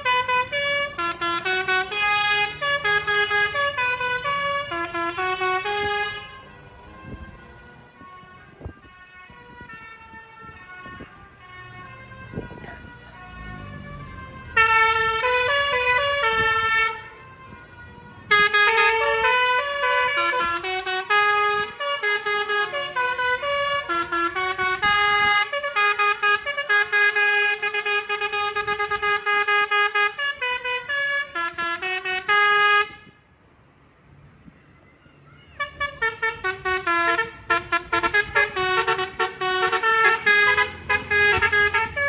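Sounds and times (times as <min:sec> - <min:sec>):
musical air horn playing a tune: 0:00.0 - 0:06.4, 0:14.6 - 0:17.1, 0:18.3 - 0:33.1, 0:35.6 - 0:42.0.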